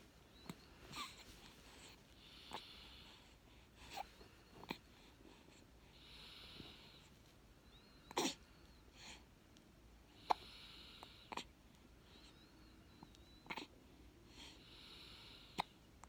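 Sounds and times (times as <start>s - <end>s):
soft breathing: 0.1s - 9.4s, 10.0s - 16.0s
baby hiccuping: 8.1s - 8.4s.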